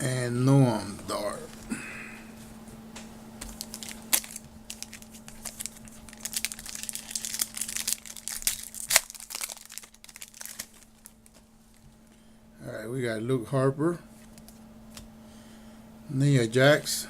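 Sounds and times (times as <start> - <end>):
loud wrapper snaps: 3.4 - 11.4
foil wrapper crinkling and tearing: 3.4 - 11.8.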